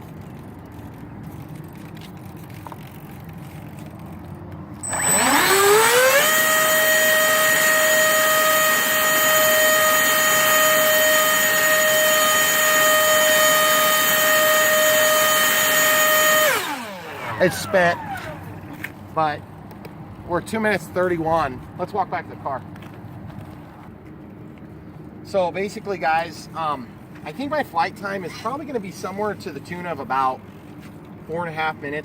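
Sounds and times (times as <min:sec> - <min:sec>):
electric fan motors whining: 0:00.0 - 0:19.2.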